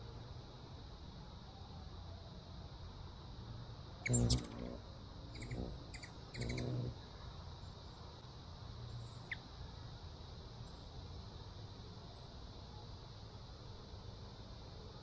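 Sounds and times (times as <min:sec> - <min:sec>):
hummingbird wing hum: 0:04.0 - 0:07.0
high bird chip notes: 0:04.1 - 0:04.6.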